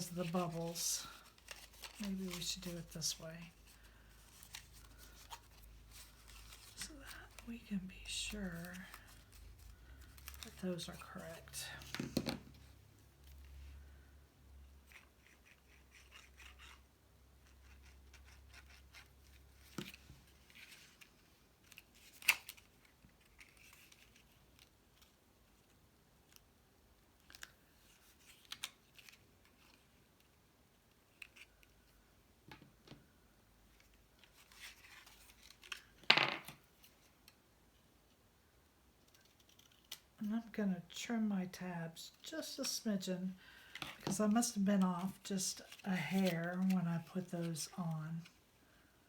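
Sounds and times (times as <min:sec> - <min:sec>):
card rustling: 0:00.0 - 0:13.8, 0:17.6 - 0:25.7, 0:33.7 - 0:37.2, 0:43.4 - 0:48.4.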